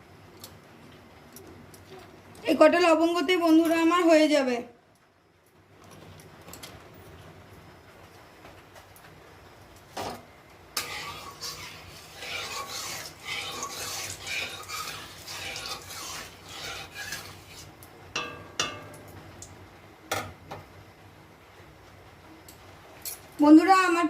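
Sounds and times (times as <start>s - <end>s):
utensils scraping cookware: 10.8s - 18.8s
utensils knocking on cookware: 18.2s - 19.0s.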